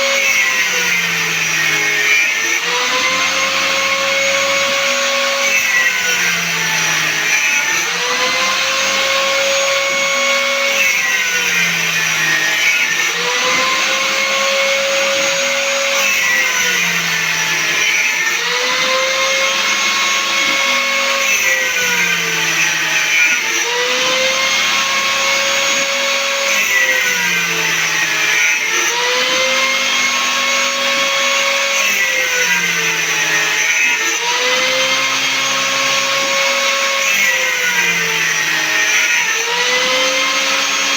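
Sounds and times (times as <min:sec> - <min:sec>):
router spindle whine: 0:00.0 - 0:40.9.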